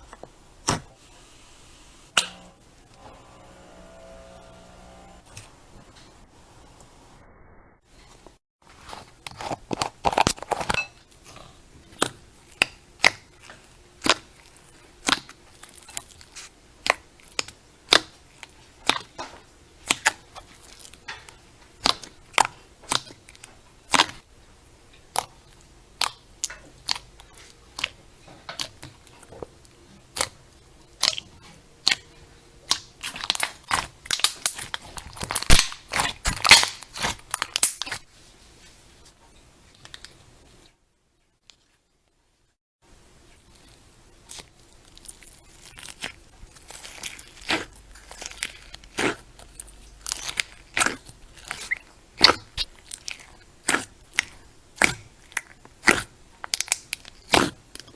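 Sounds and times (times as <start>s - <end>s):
crunchy slime crackling: 32.7s - 38.0s, 43.6s - 57.9s.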